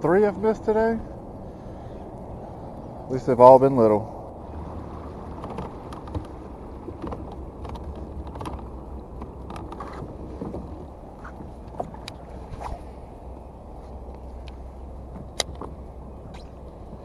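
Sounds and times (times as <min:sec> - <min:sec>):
boat engine hum: 0:00.0 - 0:17.0
light clicks and knocks: 0:05.3 - 0:12.3.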